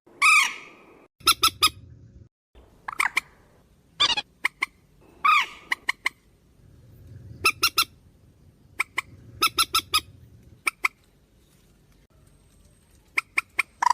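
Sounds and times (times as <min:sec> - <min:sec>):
swamphen squawk: 0:00.2 - 0:01.8, 0:04.0 - 0:06.2, 0:07.4 - 0:08.0, 0:08.7 - 0:11.0.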